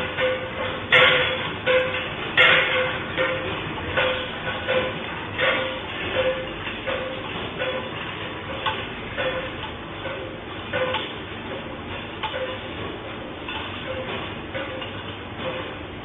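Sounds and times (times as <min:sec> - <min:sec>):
dishes and utensils rattling: 0:00.0 - 0:11.2.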